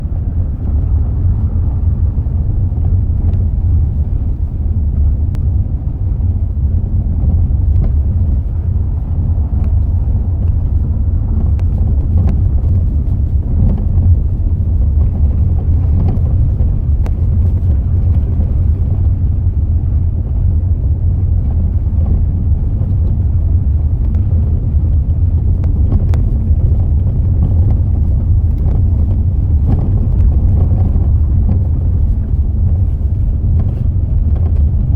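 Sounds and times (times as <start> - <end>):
car road rumble: 0.0 - 34.9.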